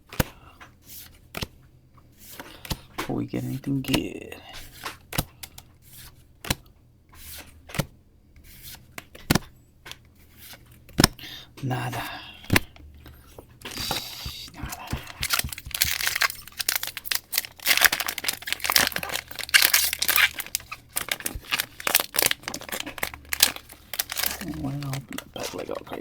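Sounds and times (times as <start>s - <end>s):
foil wrapper tearing and crinkling: 13.7s - 26.0s.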